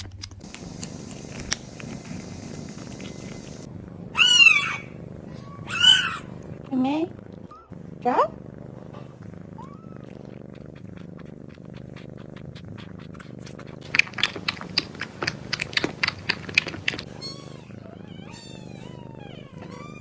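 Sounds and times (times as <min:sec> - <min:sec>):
kitten purring: 0:00.0 - 0:20.0
kitten mewing: 0:00.4 - 0:08.3, 0:09.5 - 0:20.0
sharp clicks: 0:13.8 - 0:17.1.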